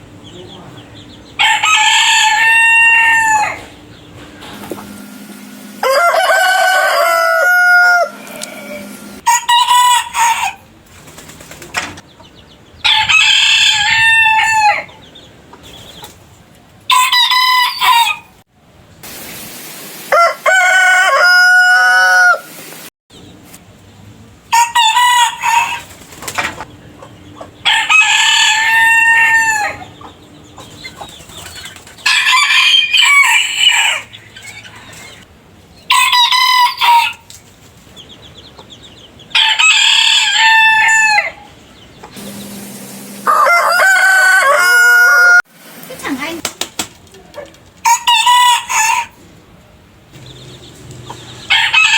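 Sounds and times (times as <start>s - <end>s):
roosters crowing: 1.2s - 10.8s, 12.7s - 15.2s, 16.9s - 18.4s, 20.1s - 22.6s, 24.5s - 26.0s, 27.5s - 31.2s, 32.0s - 37.3s, 39.2s - 45.5s, 47.8s - 49.4s, 50.1s - 51.9s.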